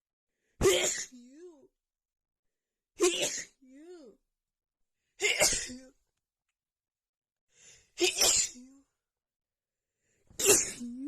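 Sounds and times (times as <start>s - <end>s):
woman sneezing: 0.6s - 1.2s, 8.0s - 8.7s, 10.4s - 11.0s
faint in-breath: 7.5s - 8.0s.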